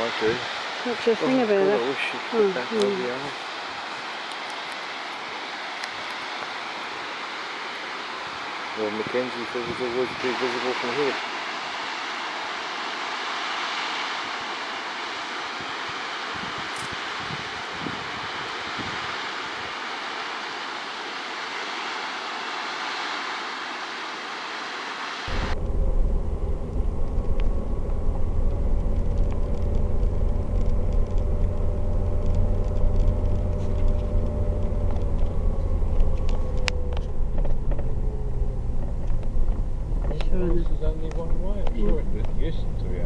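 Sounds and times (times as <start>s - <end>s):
steady rushing noise: 0.0s - 43.0s
car road noise inside cabin: 25.1s - 43.0s.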